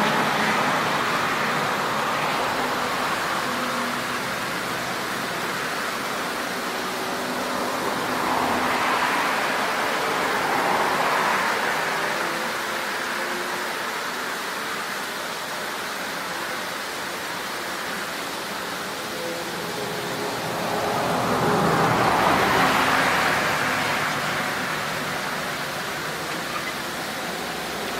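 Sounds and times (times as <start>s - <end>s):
small waterfall rushing: 0.0s - 27.9s
vehicle passing: 19.2s - 27.9s.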